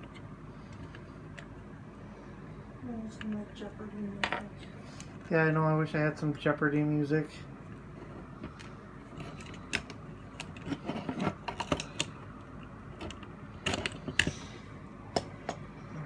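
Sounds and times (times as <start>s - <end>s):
plastic parts clicking and tapping: 8.4s - 12.3s, 13.0s - 14.4s.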